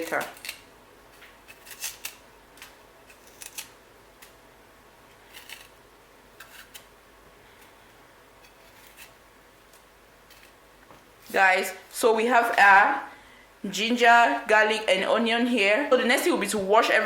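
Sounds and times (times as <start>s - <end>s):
faint steady hum: 0.0s - 17.0s
clicks and scrapes cleaning ginger: 1.2s - 4.4s.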